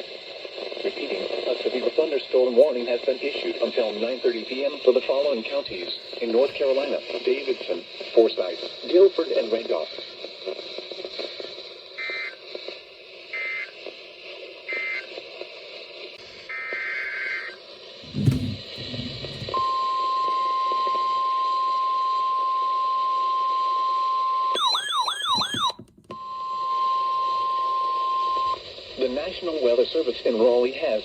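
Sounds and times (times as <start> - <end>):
steady weather radio alarm tone: 13.3 - 13.8, 14.7 - 15.2, 16.2 - 20.8, 22.3 - 30.0
low thump: 18.0 - 19.6.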